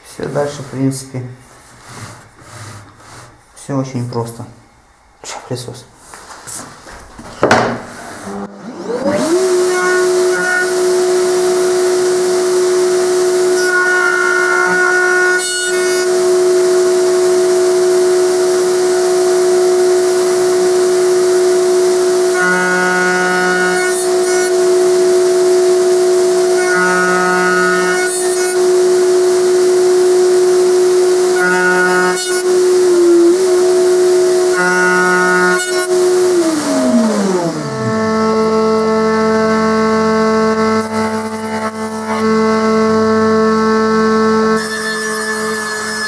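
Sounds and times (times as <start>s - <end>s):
router bit cutting wood: 0.0s - 1.2s, 1.8s - 3.4s, 7.5s - 46.0s
dust vacuum hissing: 0.0s - 3.5s, 35.6s - 42.6s
router high whine: 7.5s - 46.0s
router winding down: 8.2s - 46.0s.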